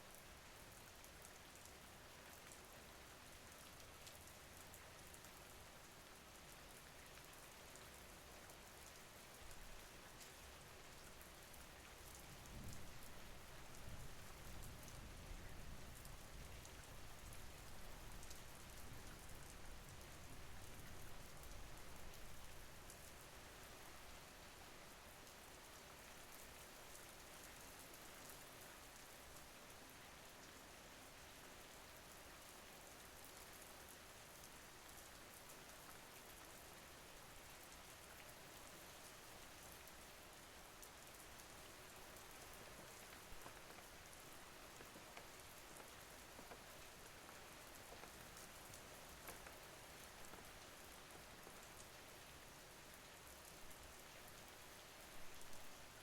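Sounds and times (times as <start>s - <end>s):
faint steady rain: 0.0s - 56.0s
louder raindrops: 39.2s - 56.0s.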